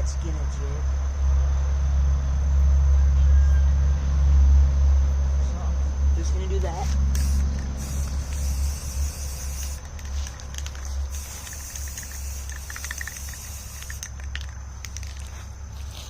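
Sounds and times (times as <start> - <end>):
spray paint can hissing: 6.8 - 16.0.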